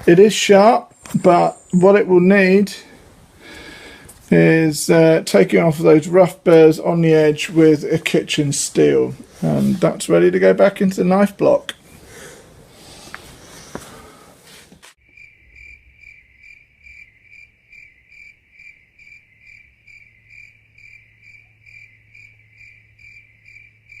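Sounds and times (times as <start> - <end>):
cricket chirping: 15.0 - 24.0.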